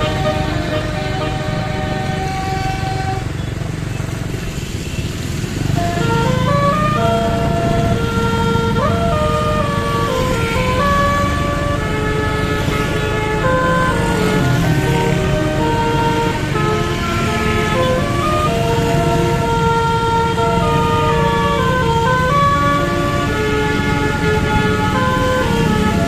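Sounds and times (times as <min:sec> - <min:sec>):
bus horn playing a tune: 0:00.0 - 0:03.6, 0:04.5 - 0:26.0
bus engine rumble: 0:00.0 - 0:26.0.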